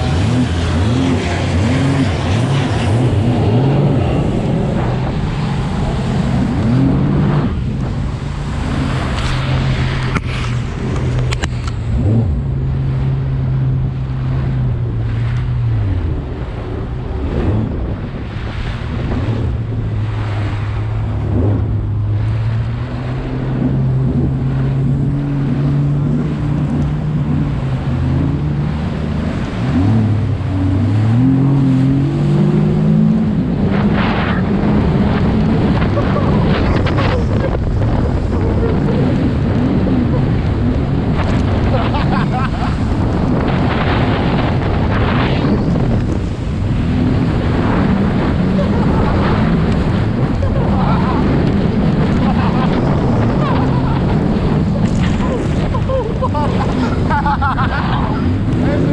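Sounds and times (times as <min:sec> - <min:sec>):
water rushing past: 0:00.0 - 0:58.9
watercraft engine running: 0:00.0 - 0:58.9
wind buffeting microphone: 0:00.0 - 0:58.9.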